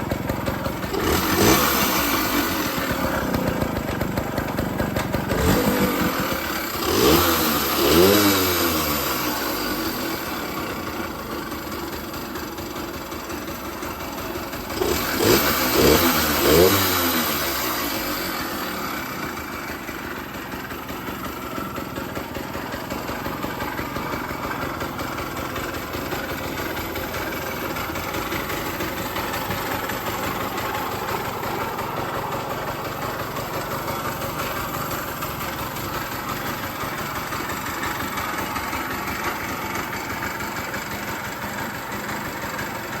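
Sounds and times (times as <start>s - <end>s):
small two-stroke engine idling: 0.0s - 43.0s.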